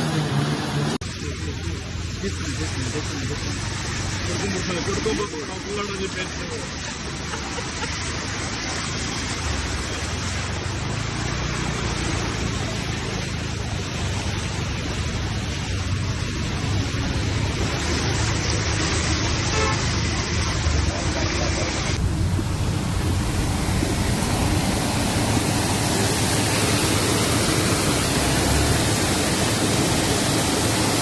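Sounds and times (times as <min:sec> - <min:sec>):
heavy rain: 0:00.0 - 0:31.0
running floodwater: 0:00.0 - 0:31.0
low rumble: 0:21.0 - 0:29.8.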